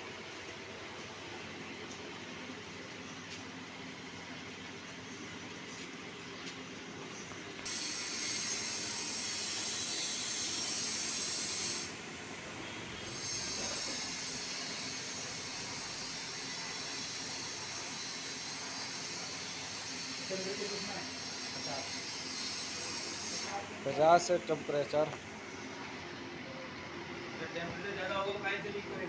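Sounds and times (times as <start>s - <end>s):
high steam hiss: 7.6s - 24.9s.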